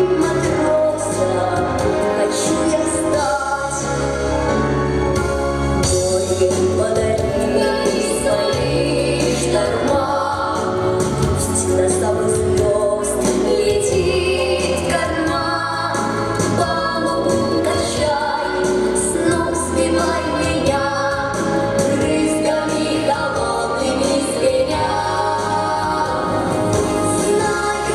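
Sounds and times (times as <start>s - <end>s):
instrumental accompaniment with bass: 0.0s - 27.9s
children singing: 6.0s - 27.9s.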